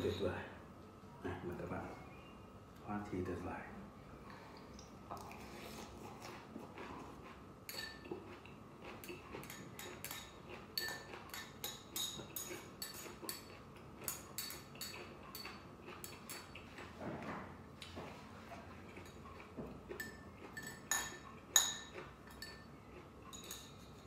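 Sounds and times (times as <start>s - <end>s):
utensils clinking against a bowl: 0.0s - 0.5s, 6.2s - 17.0s, 18.8s - 24.0s.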